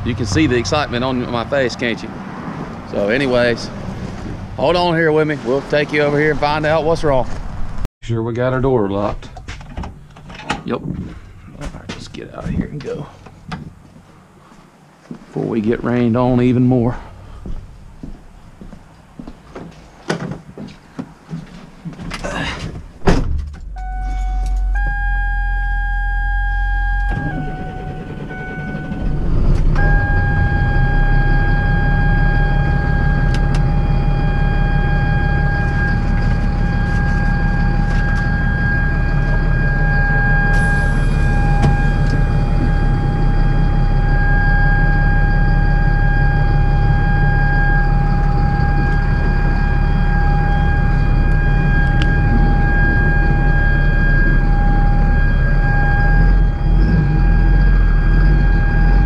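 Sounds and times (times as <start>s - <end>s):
vehicle door shutting: 22.1s - 25.4s, 26.4s - 31.6s, 40.4s - 43.1s
vehicle engine running: 24.5s - 59.0s.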